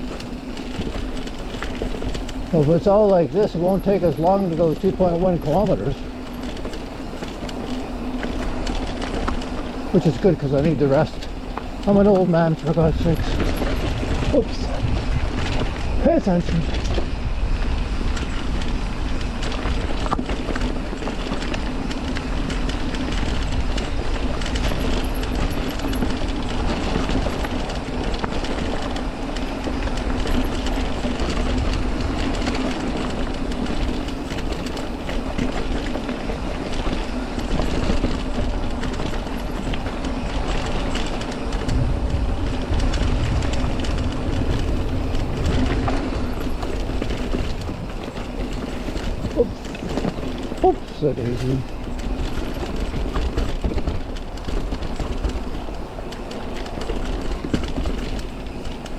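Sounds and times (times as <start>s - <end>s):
bike rattling: 0.0s - 58.9s
tyres rolling over dirt and rocks: 0.0s - 58.9s.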